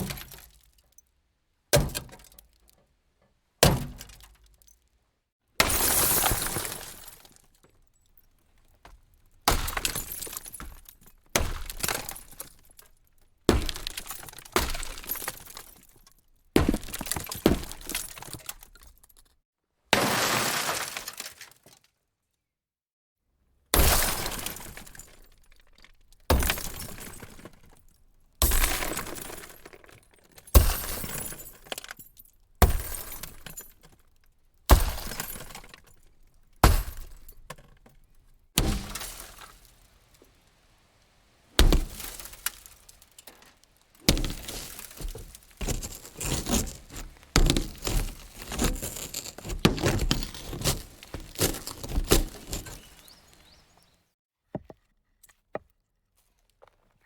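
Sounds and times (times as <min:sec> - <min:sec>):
glass smashing: 0:05.6 - 0:07.4, 0:09.5 - 0:12.8, 0:13.6 - 0:16.0, 0:20.0 - 0:21.4, 0:28.4 - 0:33.8, 0:34.7 - 0:35.8, 0:38.6 - 0:39.7, 0:41.6 - 0:43.3, 0:44.0 - 0:53.6.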